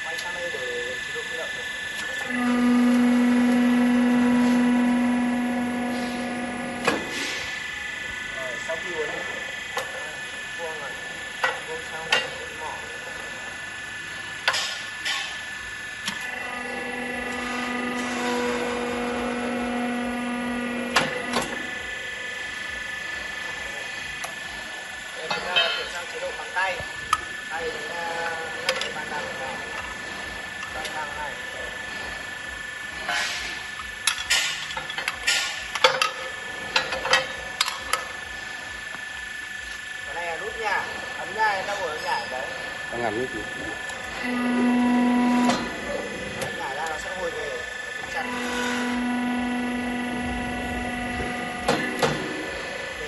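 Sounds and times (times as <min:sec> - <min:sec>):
faint steady whine: 0:00.0 - 0:53.0
low steady machine hum: 0:00.0 - 0:53.0
rebar bender whining: 0:01.9 - 0:09.9, 0:16.0 - 0:22.9, 0:42.9 - 0:53.0.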